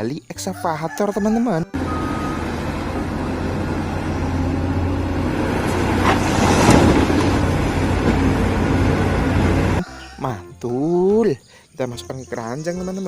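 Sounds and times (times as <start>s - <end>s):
heavy vehicle engine running: 1.8s - 9.8s.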